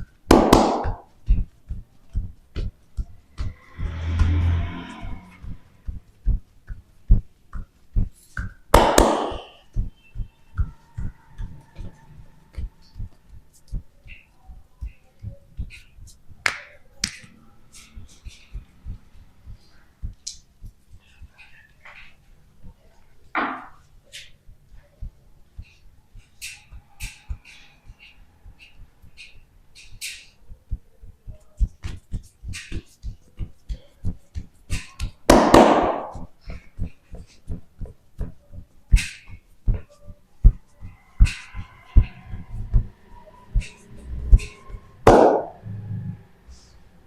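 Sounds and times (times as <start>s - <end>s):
steady low thumping: 0.0s - 16.4s, 35.9s - 45.6s.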